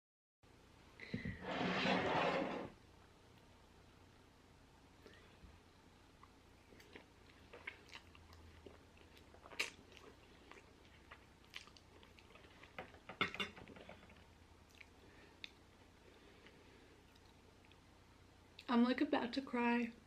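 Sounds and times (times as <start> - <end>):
person chewing fries: 6.2 - 13.1, 13.7 - 17.8.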